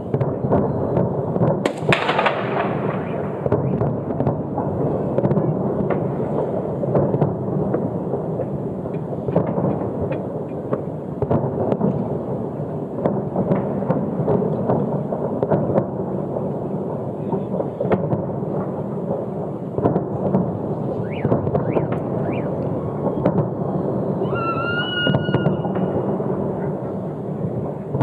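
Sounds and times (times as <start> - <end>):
hissing firework burst: 0.0 - 28.0
rumble of firework bursts: 0.0 - 28.0
sharp firework bangs: 0.0 - 28.0.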